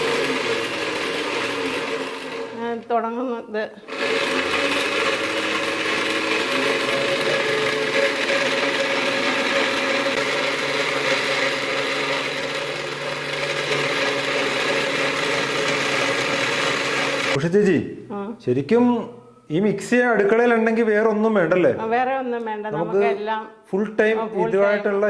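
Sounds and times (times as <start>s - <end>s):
mixer grinder whirring: 0.0s - 2.7s, 3.8s - 17.4s.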